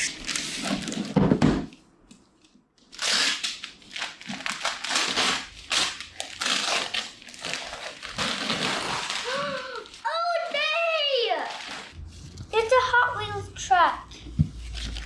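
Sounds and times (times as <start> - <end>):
cardboard box tearing: 2.9 - 9.5.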